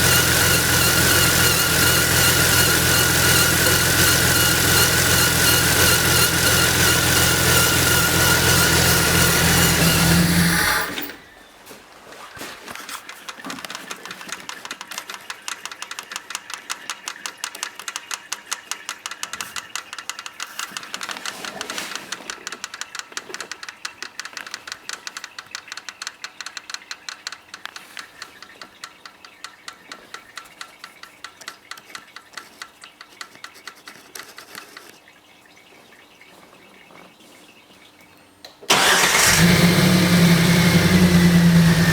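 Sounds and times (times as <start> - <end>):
engine shutting off: 0.0 - 11.2, 38.7 - 41.9
rapid even ticking from engine: 0.0 - 11.2, 38.7 - 41.9.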